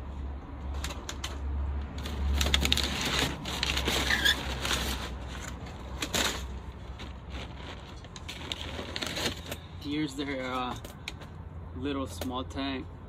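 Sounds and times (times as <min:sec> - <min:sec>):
packaging crinkling and rustling: 0:00.8 - 0:09.7.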